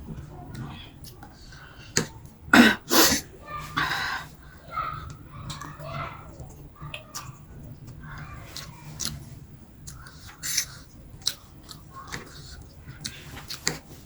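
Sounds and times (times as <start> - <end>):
mouth clicks and smacks: 6.4 - 14.0
person chewing noodles: 6.5 - 14.0.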